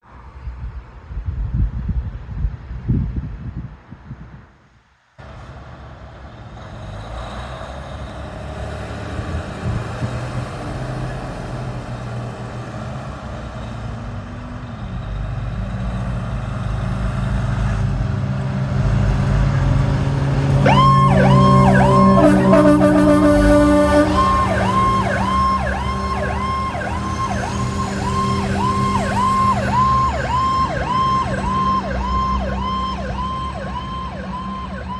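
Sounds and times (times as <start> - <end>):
fire truck engine rumble: 5.2 - 34.9
low air horn blast: 19.6 - 29.3
wailing electronic siren: 20.4 - 34.9.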